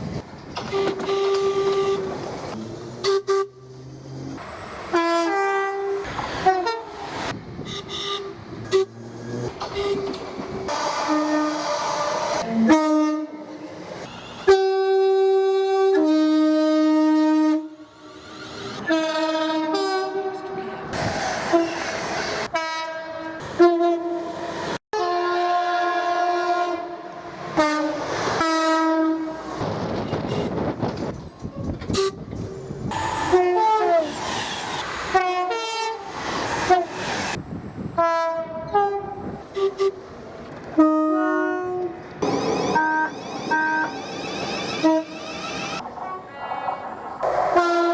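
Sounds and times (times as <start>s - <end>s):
passing train: 0.0s - 47.9s
two-tone train horn blasts: 0.6s - 2.2s, 3.0s - 3.7s, 4.9s - 11.8s, 12.4s - 20.8s, 22.5s - 24.3s, 24.9s - 27.0s, 27.6s - 29.6s, 31.9s - 34.1s, 35.1s - 36.1s, 38.0s - 40.0s, 40.7s - 42.0s, 42.7s - 44.0s, 44.8s - 45.2s, 47.5s - 47.9s.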